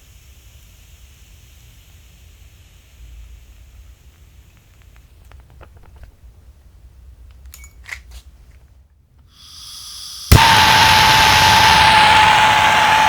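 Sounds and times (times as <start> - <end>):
gas hissing from nozzle: 0.0 - 4.7, 9.4 - 13.0
torch flame burning with whistle: 0.0 - 5.0, 9.4 - 13.0.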